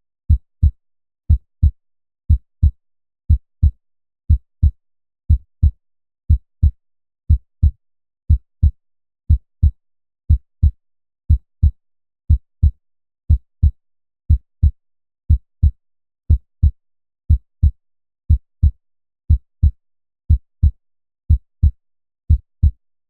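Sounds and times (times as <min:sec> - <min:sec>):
heartbeat thumps: 0:06.3 - 0:08.7.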